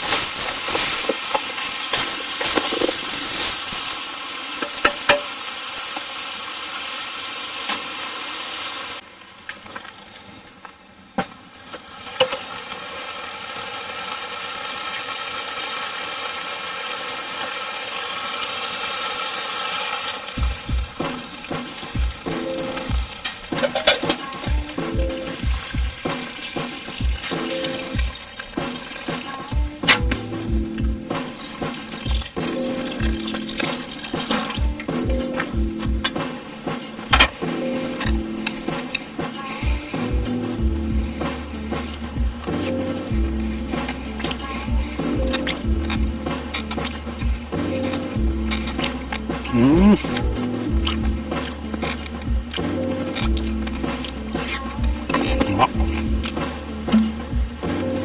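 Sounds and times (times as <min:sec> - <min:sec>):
food sizzling over fire: 0:00.0 - 0:58.0
background music with bass: 0:20.4 - 0:58.0.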